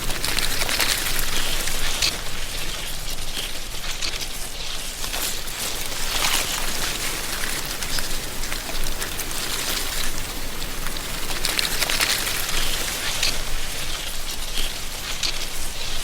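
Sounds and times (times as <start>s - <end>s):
wind rustling dry leaves: 0.0s - 16.0s.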